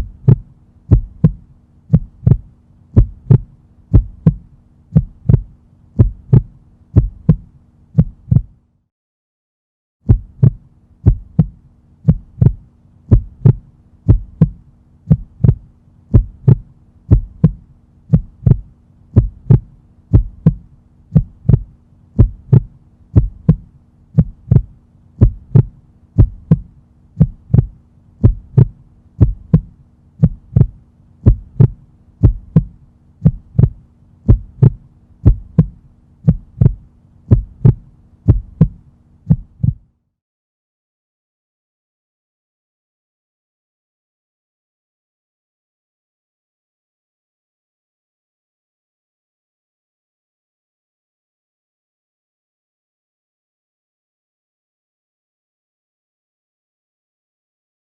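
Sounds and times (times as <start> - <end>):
heartbeat: 0.0 - 8.6, 10.1 - 39.9
faint steady hum: 0.0 - 8.8, 10.1 - 39.9.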